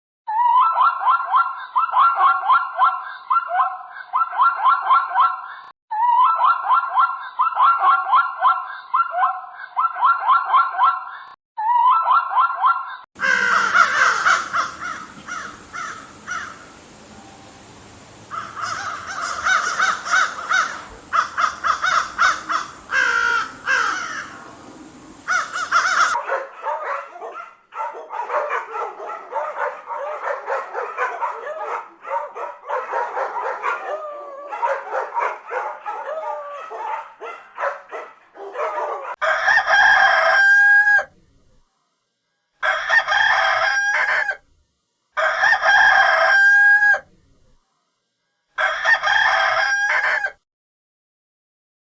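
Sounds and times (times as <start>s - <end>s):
animal calls: 11.8s - 26.2s.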